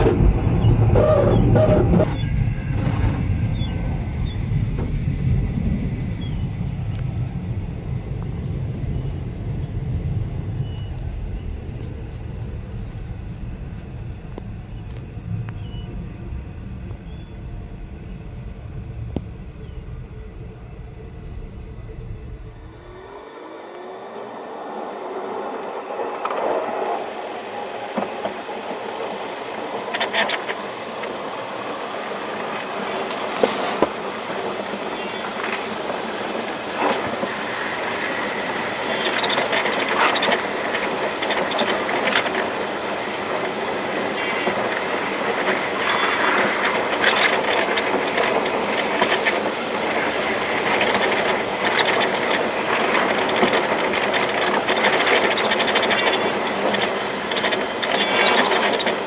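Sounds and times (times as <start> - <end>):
passenger train rumble: 0.0 - 59.0
wheels clicking on track: 25.4 - 59.0.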